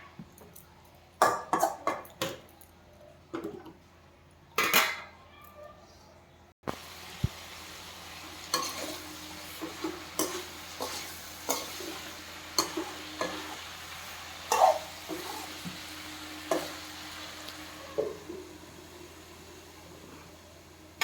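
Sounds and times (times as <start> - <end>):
low sizzle: 6.6 - 21.0
metal spoon scraping a pan: 8.5 - 13.6, 14.5 - 15.8.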